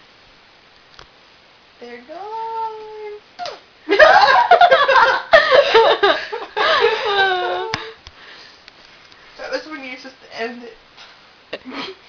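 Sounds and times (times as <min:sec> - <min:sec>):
people laughing loudly: 0:03.9 - 0:07.8.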